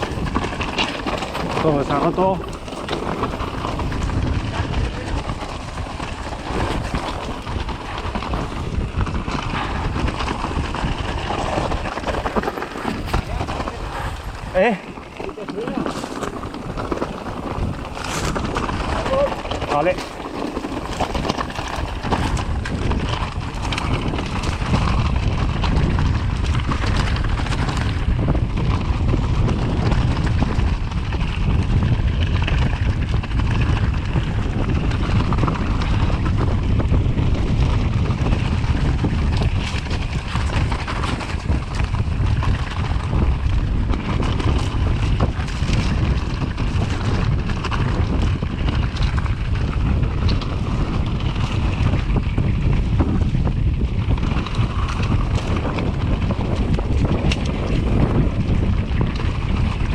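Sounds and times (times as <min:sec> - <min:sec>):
bike rattling over rough ground: 0:00.0 - 0:59.9
wind buffeting microphone: 0:00.0 - 0:59.9.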